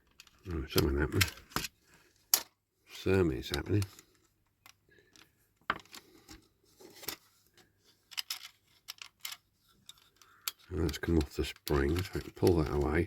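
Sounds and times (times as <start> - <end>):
clicks of model car parts: 8.0 - 12.8.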